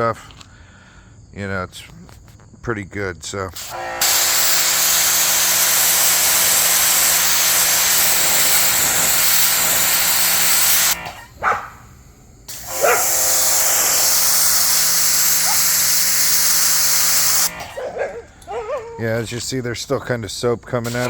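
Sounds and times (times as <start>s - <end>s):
pressure washer spray hissing: 3.6s - 20.1s, 20.7s - 21.0s
dog barking: 11.0s - 11.9s, 12.7s - 13.3s, 15.2s - 15.9s, 17.4s - 19.1s.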